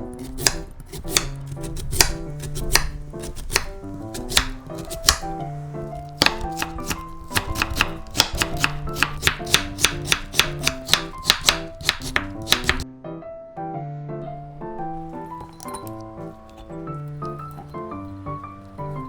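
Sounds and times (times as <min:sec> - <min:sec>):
knife chopping on cutting board: 0:00.0 - 0:12.8
light background music: 0:00.0 - 0:19.0.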